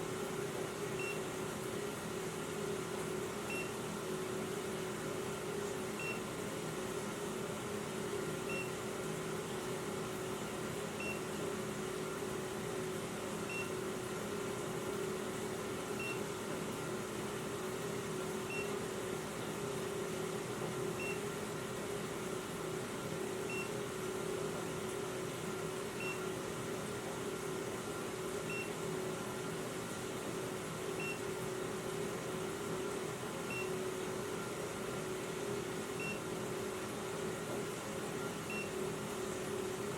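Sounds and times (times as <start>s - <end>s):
carbon monoxide detector beeping: 3.5s - 3.7s, 8.5s - 8.7s.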